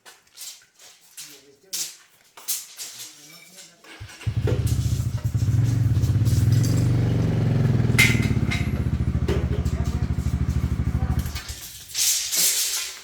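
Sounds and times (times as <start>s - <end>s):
small motorcycle engine idling: 4.0s - 11.8s.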